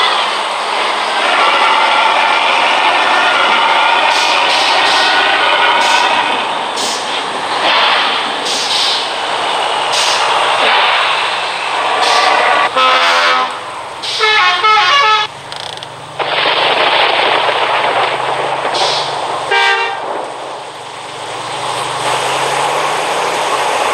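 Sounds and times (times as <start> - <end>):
wind and road noise: 0.0 - 23.9
horn honks: 12.1 - 13.6, 14.2 - 15.3, 19.5 - 20.0.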